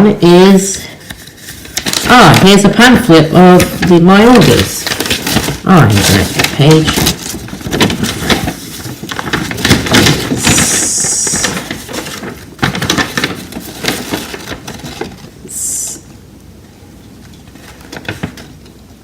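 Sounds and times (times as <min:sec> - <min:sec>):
paper rustling and crinkling: 0:00.8 - 0:15.5, 0:17.3 - 0:18.8
paper swishes: 0:01.0 - 0:16.0.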